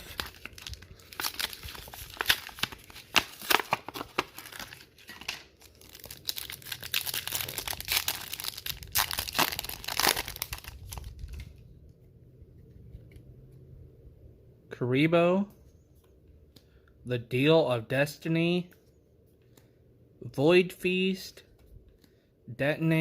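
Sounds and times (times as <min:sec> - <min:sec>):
foil wrapper tearing and crinkling: 0:00.0 - 0:11.4.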